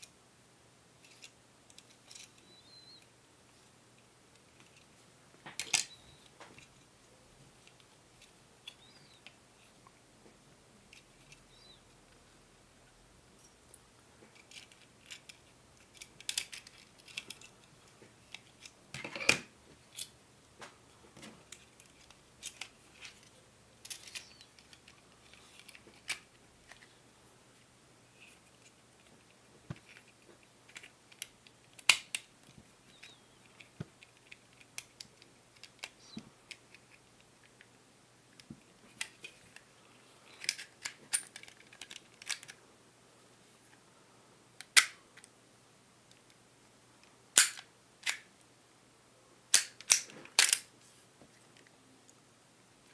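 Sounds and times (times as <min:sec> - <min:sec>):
pistol parts clicking and clattering: 0:01.0 - 0:03.0, 0:05.5 - 0:06.7, 0:14.3 - 0:20.2, 0:21.4 - 0:26.9, 0:40.3 - 0:42.6, 0:44.6 - 0:45.3, 0:47.4 - 0:48.3, 0:49.5 - 0:50.7.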